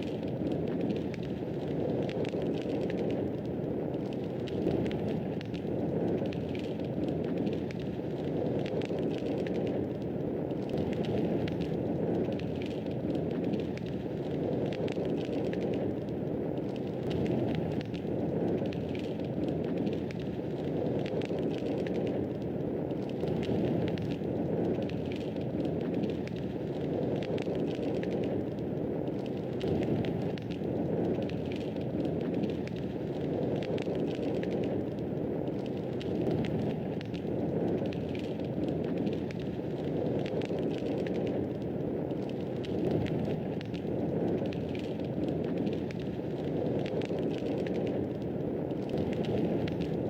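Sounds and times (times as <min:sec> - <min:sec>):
fire crackles and pops: 0:00.0 - 0:50.0
flames rushing: 0:00.0 - 0:50.0.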